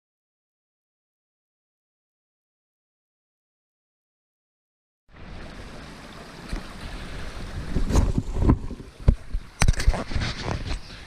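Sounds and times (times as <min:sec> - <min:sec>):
wind buffeting microphone: 0:05.2 - 0:11.0.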